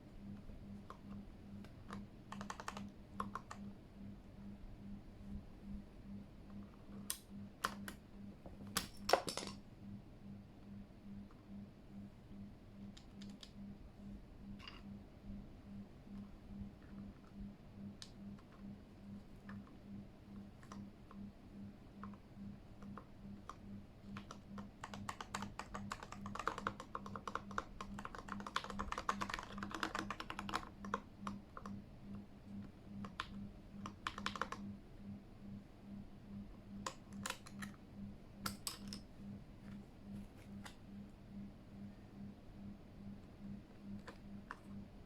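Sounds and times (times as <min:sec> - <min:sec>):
mechanical keyboard typing: 0:00.9 - 0:03.7, 0:06.9 - 0:08.0, 0:12.9 - 0:13.6, 0:22.8 - 0:31.8, 0:32.6 - 0:34.8, 0:36.7 - 0:37.8, 0:38.4 - 0:39.0
low pulsing hum: 0:03.1 - 0:08.6.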